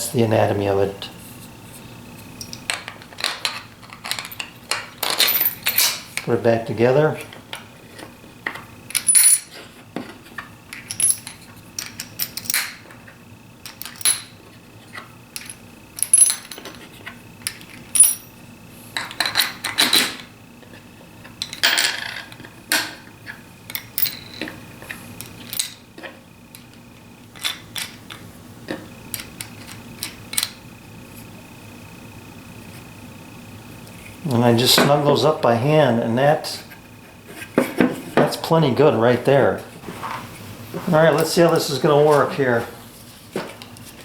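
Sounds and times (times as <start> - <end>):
metal washers clinking: 2.4 - 6.3, 8.9 - 9.5, 15.4 - 16.8, 17.9 - 18.3, 23.7 - 24.6.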